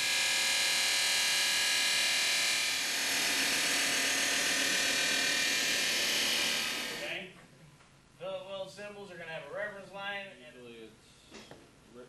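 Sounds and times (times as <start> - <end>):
welding arc buzzing hiss: 0.0 - 7.1.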